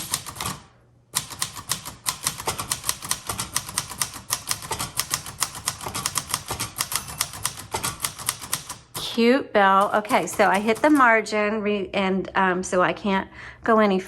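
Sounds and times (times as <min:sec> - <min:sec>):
typewriter keystrokes clacking: 0:00.0 - 0:09.2, 0:09.8 - 0:11.1.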